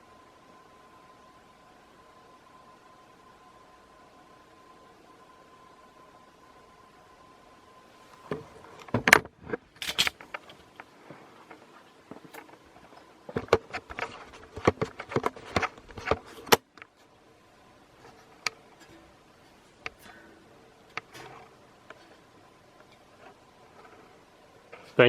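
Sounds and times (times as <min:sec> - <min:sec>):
objects clicking and rattling: 0:08.2 - 0:17.0.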